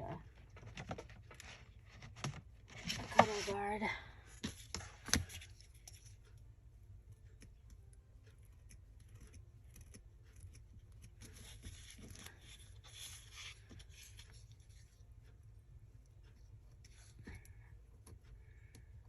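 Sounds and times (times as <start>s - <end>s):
paper rustling: 0.5s - 3.6s
scissors cutting paper: 8.3s - 14.9s.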